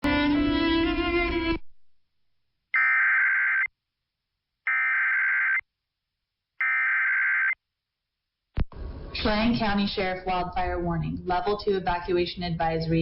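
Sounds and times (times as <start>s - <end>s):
screeching data-tone bursts: 2.8s - 3.7s, 4.7s - 5.6s, 6.6s - 7.6s.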